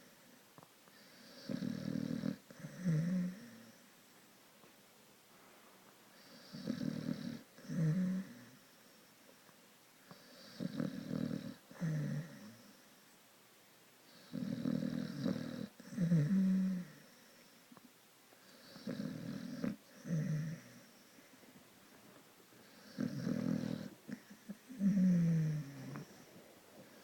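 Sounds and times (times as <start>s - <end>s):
dog snoring: 0.9s - 3.8s, 6.1s - 9.1s, 10.0s - 12.8s, 14.1s - 17.6s, 18.4s - 21.3s, 22.6s - 27.0s.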